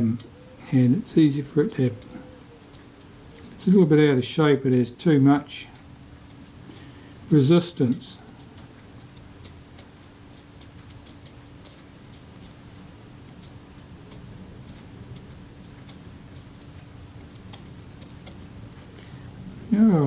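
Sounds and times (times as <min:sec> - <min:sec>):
steady low hum: 0:00.0 - 0:20.0
hand tools clicking on metal parts: 0:01.2 - 0:12.6.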